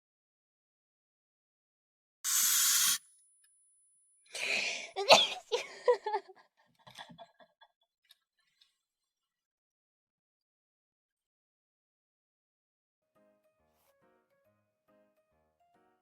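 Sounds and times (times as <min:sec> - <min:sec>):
burst of hiss: 0:02.3 - 0:03.0
breathy intake: 0:04.3 - 0:05.9
woman sneezing: 0:04.4 - 0:05.5.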